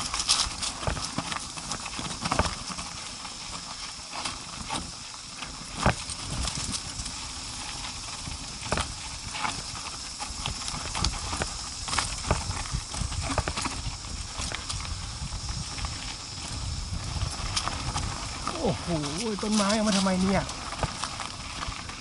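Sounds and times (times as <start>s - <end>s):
steady rushing noise: 5.6s - 22.0s.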